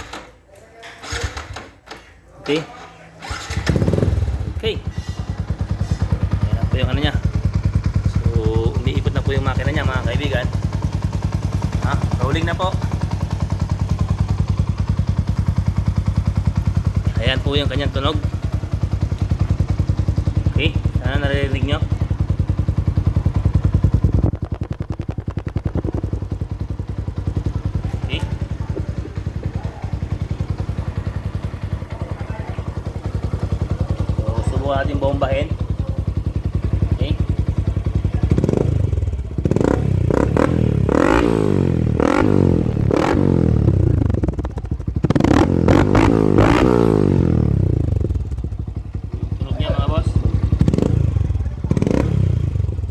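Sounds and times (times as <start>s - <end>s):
motorcycle engine exhaust beat: 3.7s - 52.9s.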